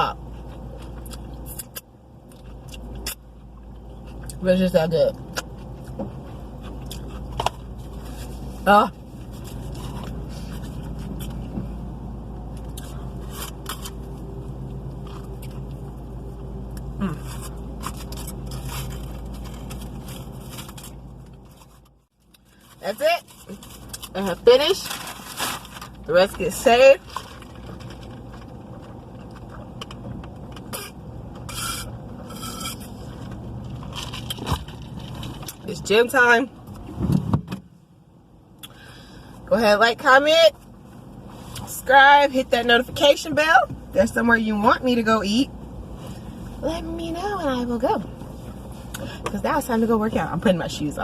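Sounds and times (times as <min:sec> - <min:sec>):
steady low hum: 0:00.0 - 0:51.0
person chewing: 0:05.3 - 0:08.2
wrapper crinkling: 0:22.4 - 0:26.1, 0:27.0 - 0:29.0, 0:33.6 - 0:35.6.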